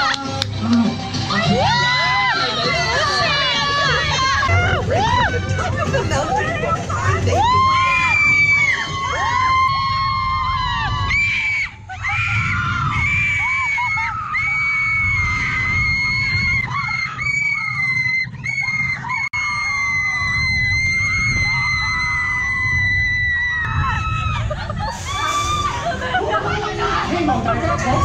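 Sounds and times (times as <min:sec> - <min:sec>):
low rumble: 0:00.0 - 0:28.0
riders screaming: 0:07.3 - 0:26.2.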